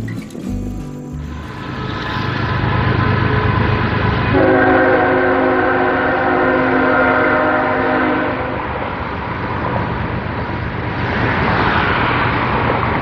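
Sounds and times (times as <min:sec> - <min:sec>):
steady rushing noise: 0:01.1 - 0:06.8, 0:08.3 - 0:13.0
train horn chord: 0:01.6 - 0:08.8.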